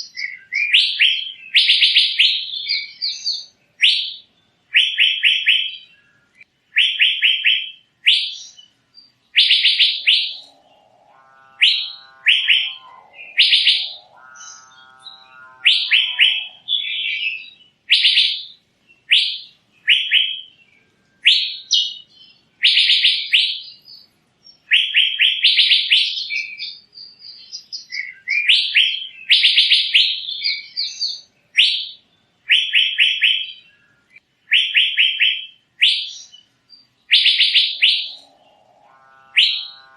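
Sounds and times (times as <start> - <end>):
bird chirping rapidly: 6.8 - 20.6, 34.5 - 39.9
buzzy bird calls: 9.3 - 18.5, 37.1 - 39.9.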